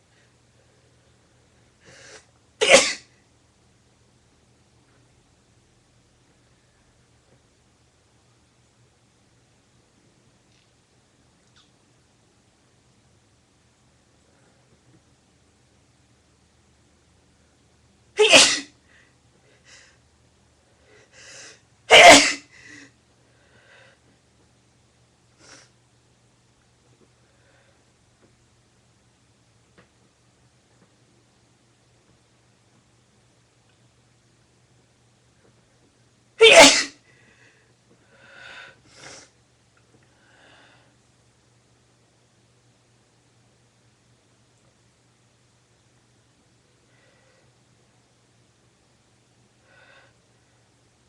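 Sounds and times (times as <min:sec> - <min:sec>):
woman sneezing loudly: 0:02.6 - 0:03.1, 0:18.2 - 0:18.8, 0:21.9 - 0:22.5, 0:36.4 - 0:37.0.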